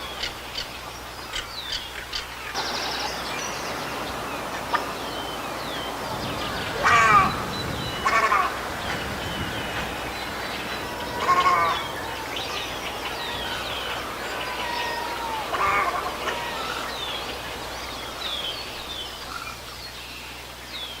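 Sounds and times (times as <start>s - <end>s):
small birds chirping: 0.0s - 21.0s
heron harsh call: 6.4s - 17.7s.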